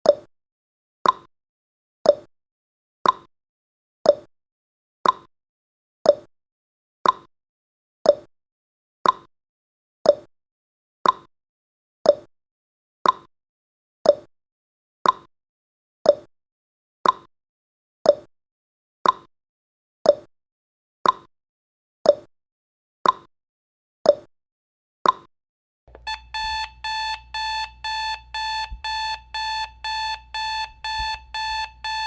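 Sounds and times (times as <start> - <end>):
alarm clock beeping: 25.9 - 32.0
timer ticking: 25.9 - 32.0.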